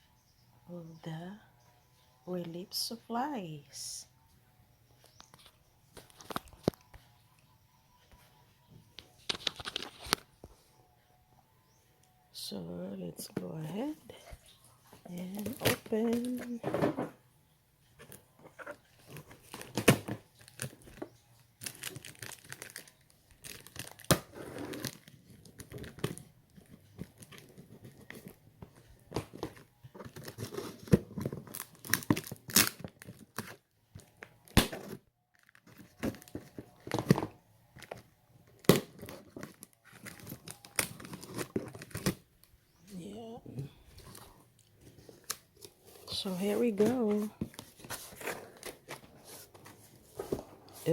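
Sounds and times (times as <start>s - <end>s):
packing tearing and crinkling: 18.7s - 21.0s, 21.6s - 37.2s, 38.6s - 42.5s.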